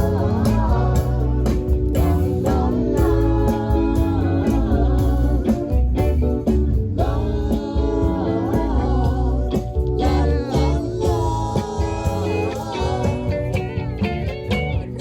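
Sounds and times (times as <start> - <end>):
band playing blues song: 0.0 - 15.0
guitar: 0.0 - 15.0
person singing: 7.0 - 13.6.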